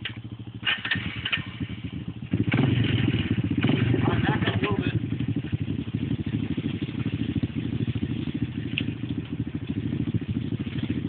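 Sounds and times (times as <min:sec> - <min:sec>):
engine running at low revs: 0:00.0 - 0:11.0.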